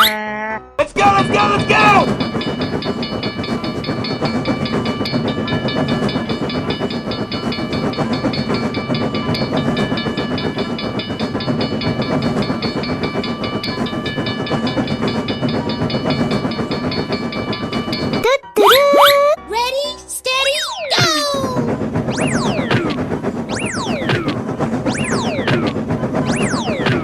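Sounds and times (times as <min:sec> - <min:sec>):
train running on rails: 0:00.8 - 0:27.0
high-pitched tones: 0:18.2 - 0:19.4.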